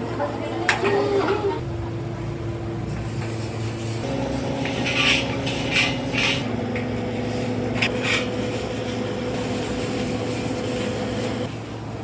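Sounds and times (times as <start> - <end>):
motor humming: 0.9 - 12.0.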